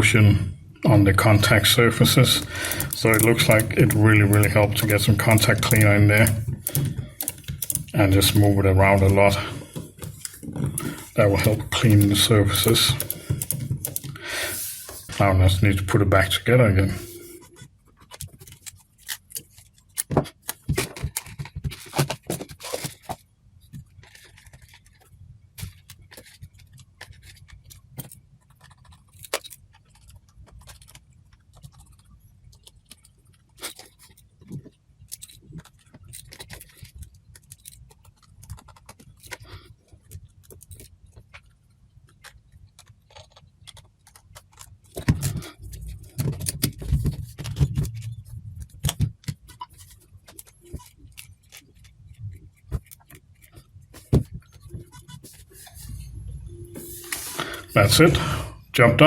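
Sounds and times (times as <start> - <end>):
camera parts clicking and tapping: 2.0 - 14.2
handling knocks and bumps: 43.1 - 55.4.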